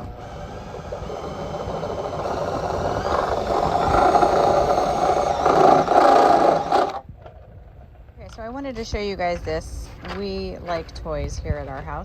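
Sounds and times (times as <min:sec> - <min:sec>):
motor tool rattling whine: 0:00.0 - 0:07.0.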